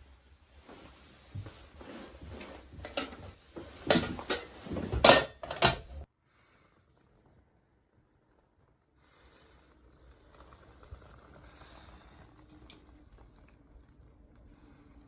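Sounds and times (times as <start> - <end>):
objects knocking and clattering: 2.6 - 6.0.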